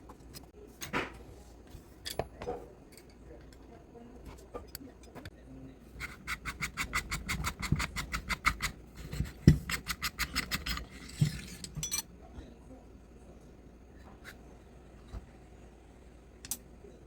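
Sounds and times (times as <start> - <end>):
scraping: 9.0 - 12.1.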